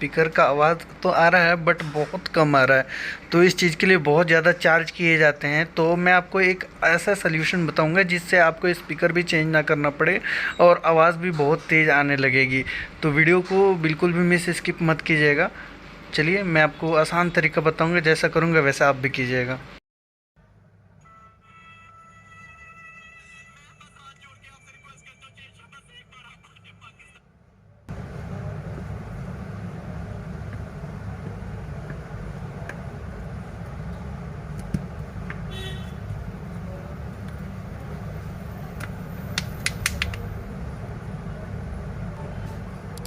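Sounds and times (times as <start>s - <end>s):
road traffic rumble: 27.9s - 43.0s
sharp clicks: 38.8s - 40.3s.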